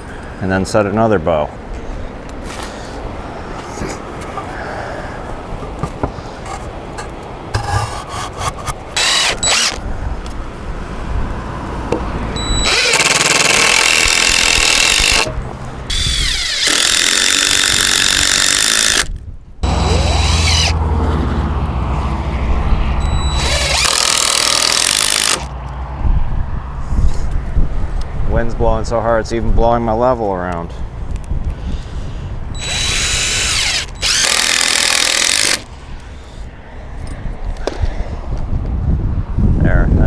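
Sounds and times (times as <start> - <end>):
power tool working wood: 7.6 - 9.8, 12.4 - 15.3, 15.9 - 20.8, 23.1 - 25.5, 32.6 - 35.7.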